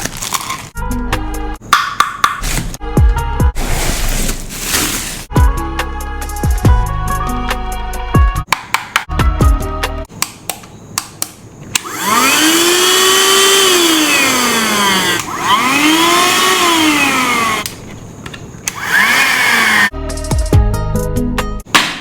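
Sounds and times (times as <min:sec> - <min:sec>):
vacuum cleaner motor whining: 0:11.8 - 0:17.8, 0:18.7 - 0:19.9.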